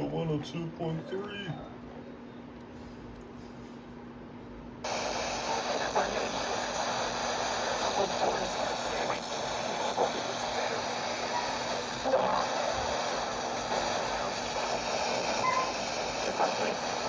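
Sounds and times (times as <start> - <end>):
faint broadcast voices: 0.0 - 2.8, 4.9 - 17.0
radio static hiss: 4.8 - 17.0.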